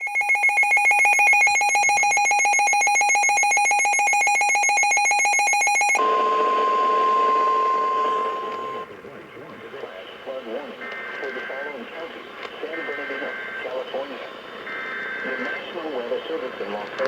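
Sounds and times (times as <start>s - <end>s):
steady electronic alert tone: 0.1s - 8.9s.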